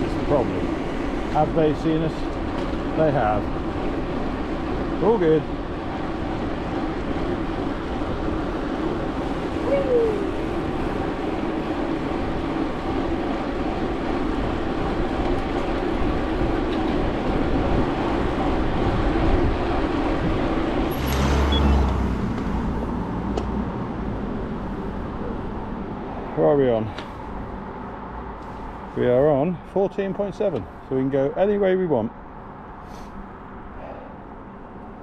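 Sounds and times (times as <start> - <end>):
road and wind noise: 0.0 - 35.0
traffic: 0.0 - 35.0
short high squeak: 20.9 - 22.1.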